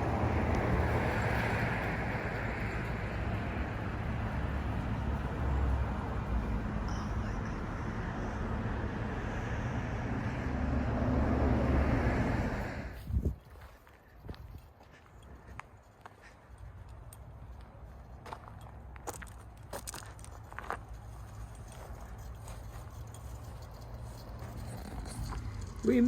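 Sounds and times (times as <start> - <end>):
road noise rushing hiss: 0.0 - 13.2
engine and tyre rumble: 0.0 - 26.0.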